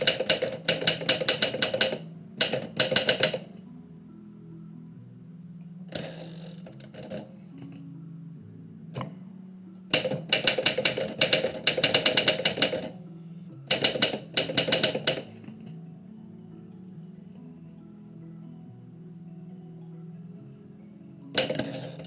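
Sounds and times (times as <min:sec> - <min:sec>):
typewriter keys striking: 0:00.0 - 0:03.6, 0:10.0 - 0:13.0, 0:13.7 - 0:15.4
soft background music: 0:00.0 - 0:22.0.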